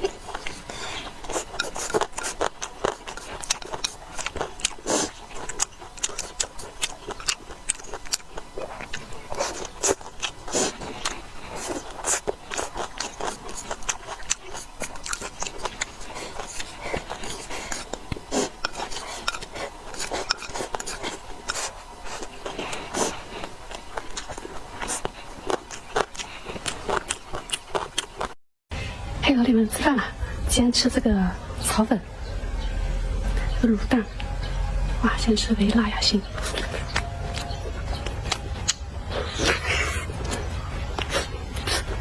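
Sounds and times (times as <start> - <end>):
utensils scraping a bowl: 0.0 - 25.1
biting and chewing: 0.0 - 28.4, 32.2 - 42.0.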